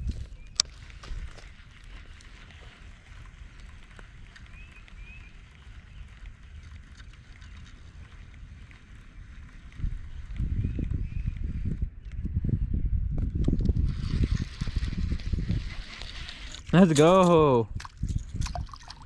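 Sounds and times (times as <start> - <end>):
wind buffeting microphone: 0.0 - 19.0
faint ticks: 0.5 - 12.2.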